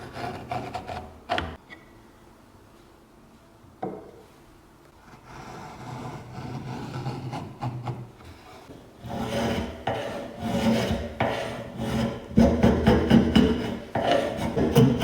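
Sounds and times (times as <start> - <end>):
hand tool scraping workpiece: 5.0 - 15.0.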